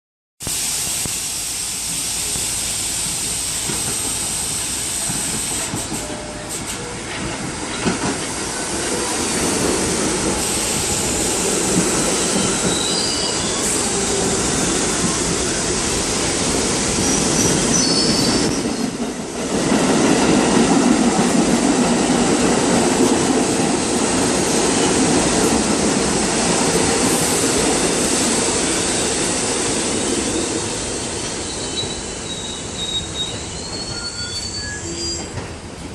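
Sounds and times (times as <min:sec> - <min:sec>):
subway train wheels on rails: 0:00.4 - 0:35.9
wheels squealing: 0:12.0 - 0:15.1, 0:31.0 - 0:35.4.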